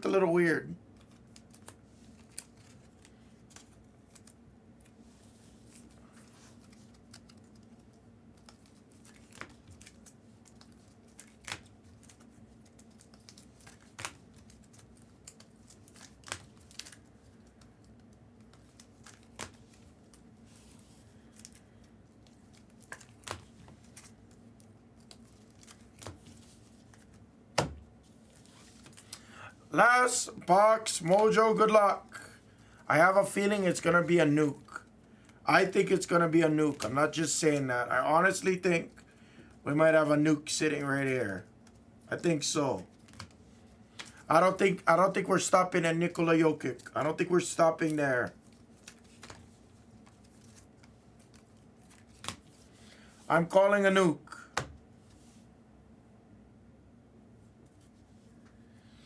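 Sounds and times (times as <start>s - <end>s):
cards and packaging rustling: 1.0s - 27.2s, 28.0s - 29.3s, 41.6s - 53.3s.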